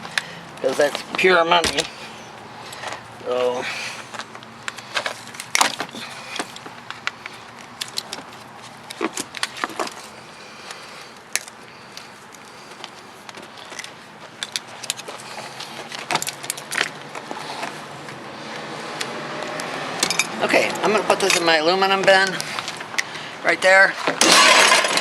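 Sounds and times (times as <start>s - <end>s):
metal parts clicking and rattling: 4.1s - 10.1s, 11.2s - 17.7s, 20.0s - 20.4s.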